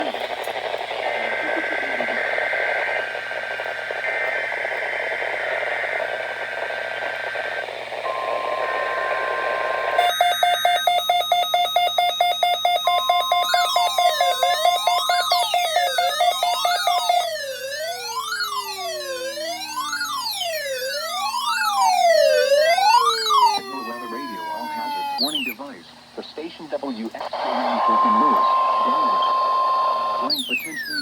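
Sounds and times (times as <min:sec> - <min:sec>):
warbling digital data tones: 0:00.0 - 0:26.2, 0:27.2 - 0:31.0
radio static: 0:00.0 - 0:31.0
beeping electronic tune: 0:08.2 - 0:25.6, 0:27.5 - 0:31.0.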